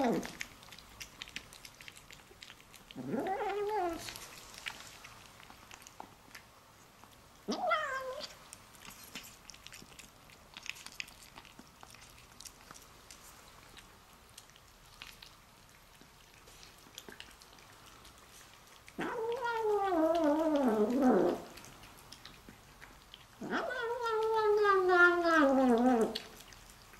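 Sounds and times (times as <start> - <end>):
faint chewing clicks: 0.0 - 26.9
kitten singing over food: 19.0 - 21.5, 23.4 - 26.5.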